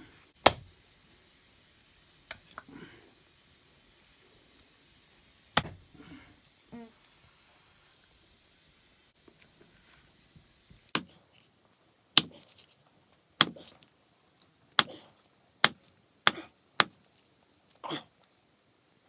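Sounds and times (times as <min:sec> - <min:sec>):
faint steady hiss: 0:00.0 - 0:19.0
knife chopping on cutting board: 0:00.4 - 0:00.7, 0:05.6 - 0:05.8, 0:11.0 - 0:11.2, 0:12.2 - 0:12.5, 0:13.4 - 0:13.7.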